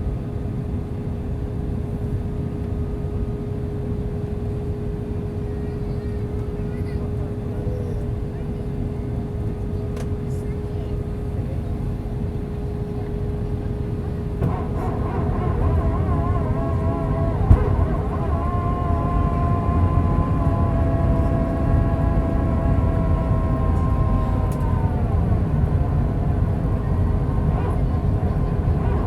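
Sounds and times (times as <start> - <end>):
airplane cabin rumble: 0.2 - 29.0
steady hum: 12.9 - 29.0
whining engine tone: 14.0 - 29.0.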